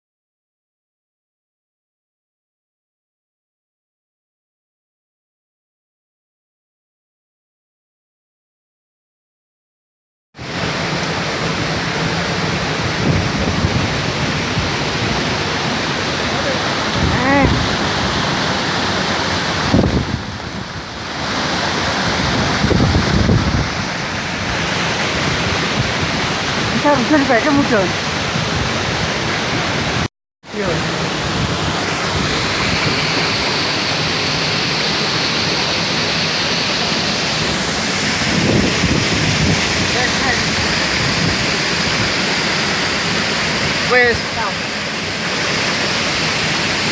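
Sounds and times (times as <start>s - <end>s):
waterfall rushing: 10.4s - 46.9s.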